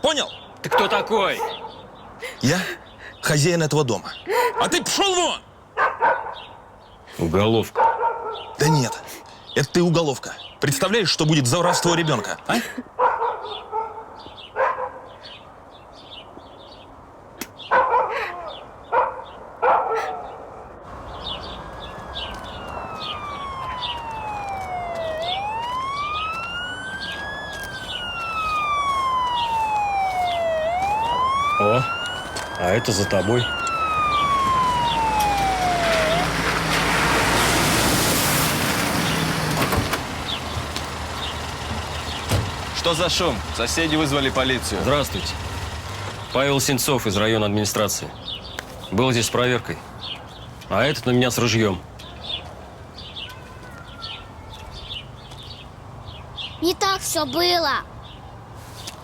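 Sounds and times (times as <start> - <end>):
dog barking: 0.7 - 1.8, 5.8 - 6.6, 7.8 - 9.1, 13.0 - 15.1, 17.7 - 18.3, 18.9 - 20.6
police siren winding down: 20.9 - 46.3
car engine humming: 20.9 - 46.8.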